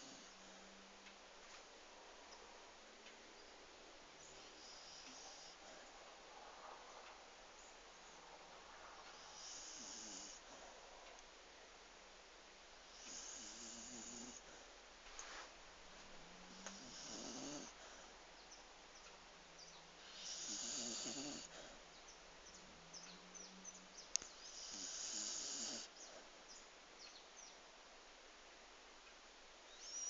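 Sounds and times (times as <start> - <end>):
pet snoring: 0.0 - 0.7, 4.3 - 5.8, 9.1 - 10.7, 12.8 - 14.6, 16.4 - 18.1, 20.0 - 21.8, 24.4 - 26.0
faint sharp click: 24.1 - 24.4.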